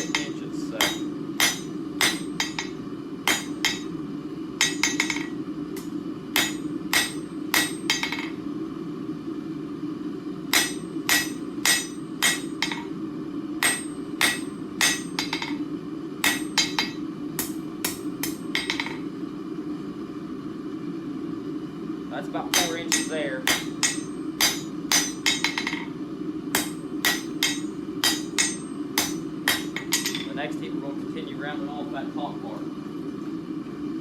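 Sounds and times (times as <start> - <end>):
hammer striking steel on anvil: 0.0 - 4.0, 4.6 - 8.4, 10.5 - 12.9, 13.6 - 15.6, 16.2 - 19.0, 22.5 - 25.9, 26.5 - 30.4
steady low hum: 0.0 - 34.0.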